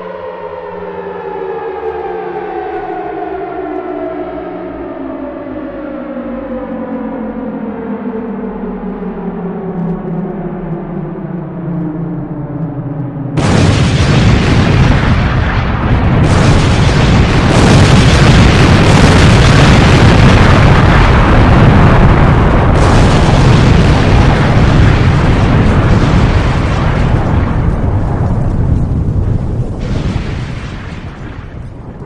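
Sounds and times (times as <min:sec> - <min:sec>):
explosion rumble with crackling: 0:12.6 - 0:32.0.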